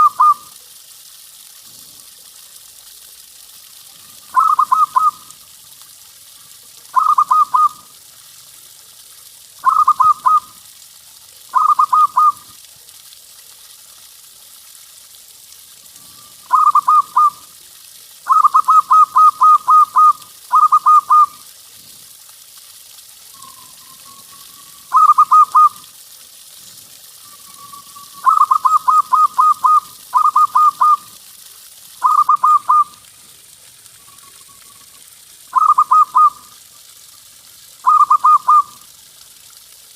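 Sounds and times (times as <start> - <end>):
dove cooing: 0.0 - 0.4, 4.3 - 5.2, 6.9 - 7.9, 9.6 - 10.5, 11.5 - 12.4, 16.5 - 17.4, 18.3 - 21.4, 23.4 - 25.8, 27.5 - 31.1, 35.6 - 36.4, 37.8 - 38.7
faint steady hiss: 0.0 - 39.9.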